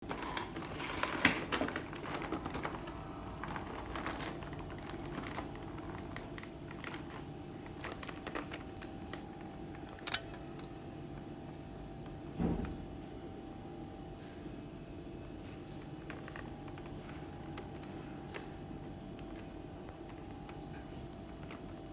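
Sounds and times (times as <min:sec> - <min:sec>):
plastic packaging crackling: 0:00.0 - 0:10.8, 0:15.5 - 0:21.9.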